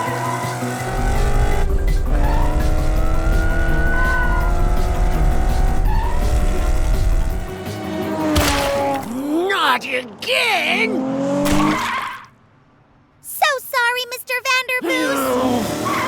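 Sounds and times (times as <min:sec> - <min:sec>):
cartoon race car engine revving: 0:00.0 - 0:09.2, 0:15.2 - 0:16.0
background music: 0:00.0 - 0:10.0.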